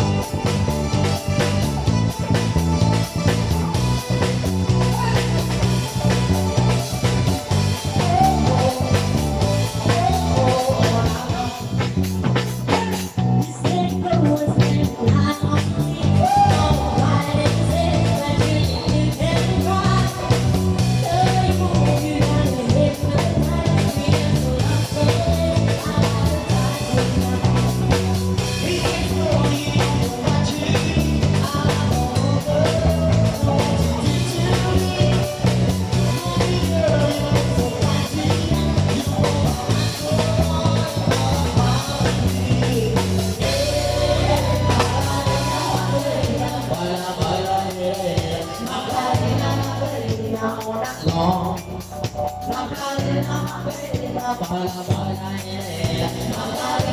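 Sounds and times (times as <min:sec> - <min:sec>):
instrumental band playing: 0:00.0 - 0:56.9.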